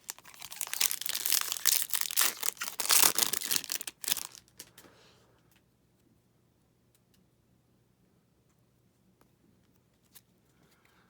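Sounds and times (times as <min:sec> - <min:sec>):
foil wrapper tearing and crinkling: 0:00.0 - 0:04.7.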